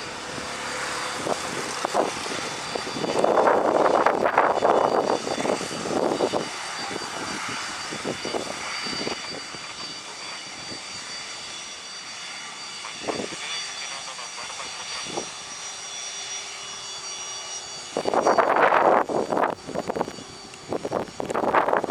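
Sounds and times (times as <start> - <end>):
wind buffeting microphone: 0.0 - 10.9, 13.0 - 13.5, 17.8 - 21.9
jet engines whining: 0.0 - 21.9.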